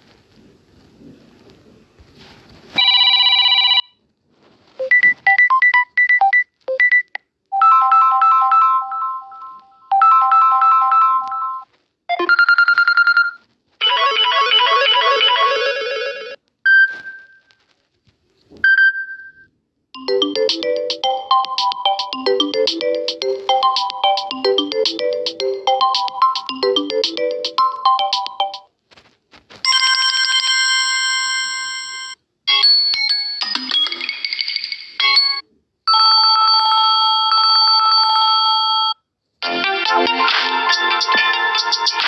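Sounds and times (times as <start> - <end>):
electronic ringtone melody: 7.6 - 16.4, 20.0 - 28.7
phone ringtone chimes and beeps: 7.6 - 17.4, 18.7 - 28.7.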